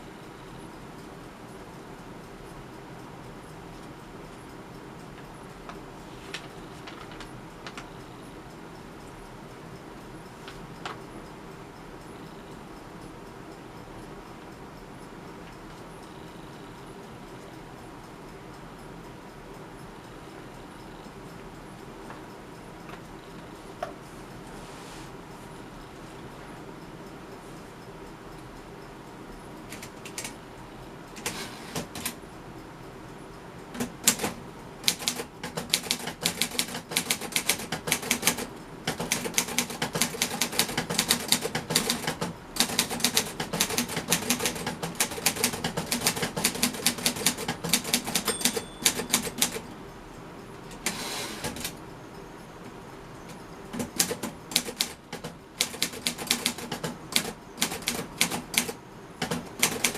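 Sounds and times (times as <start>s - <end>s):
typewriter keys clacking: 5.7s - 7.9s, 29.7s - 30.4s, 31.2s - 32.2s, 33.8s - 49.7s, 50.7s - 51.8s, 53.7s - 59.9s.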